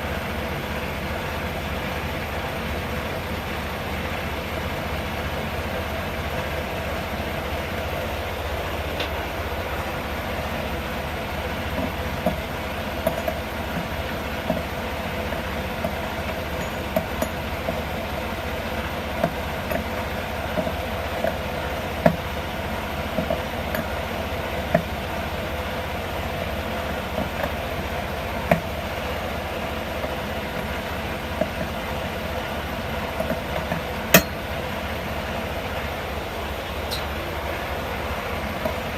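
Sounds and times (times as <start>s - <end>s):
engine rumble: 0.0s - 38.9s
light clicks and knocks: 11.7s - 14.7s.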